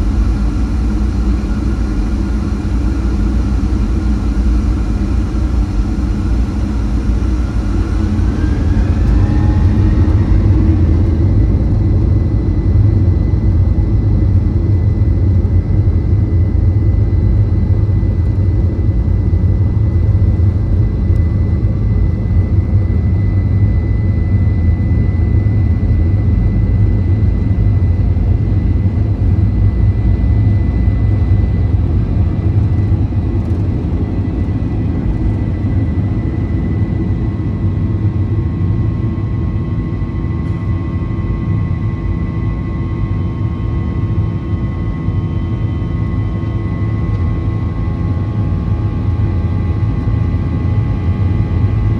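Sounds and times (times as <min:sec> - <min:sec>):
jet engines spooling up: 0:00.0 - 0:15.1
loud low rumble: 0:00.0 - 0:16.3.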